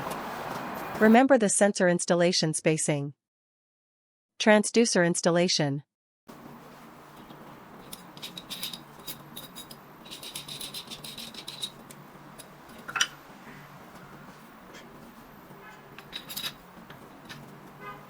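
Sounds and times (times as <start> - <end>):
small parts clicking and rattling: 7.2 - 13.1, 16.0 - 17.5.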